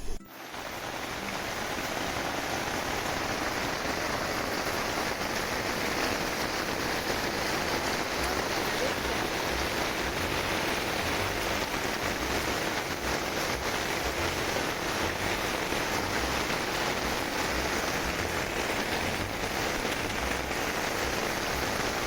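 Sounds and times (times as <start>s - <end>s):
steady rain falling: 0.0s - 22.0s.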